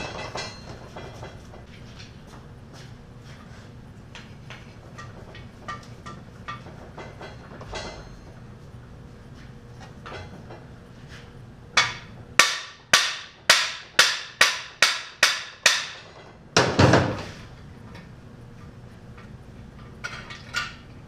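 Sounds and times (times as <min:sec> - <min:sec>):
metallic clatter: 0:00.0 - 0:02.1, 0:04.8 - 0:08.5
hammer ringing on metal: 0:11.8 - 0:16.0.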